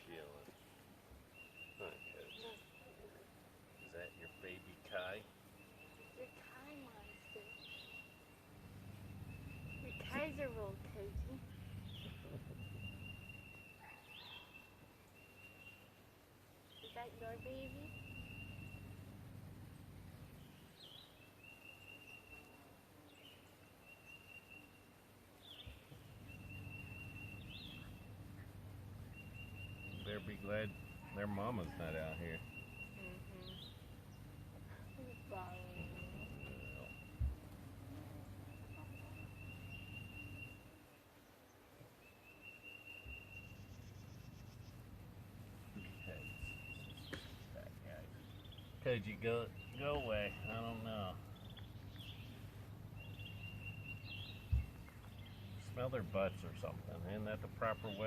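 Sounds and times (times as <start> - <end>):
faint low hum: 0.0 - 58.0
bird chirp and high whistle: 42.1 - 43.8.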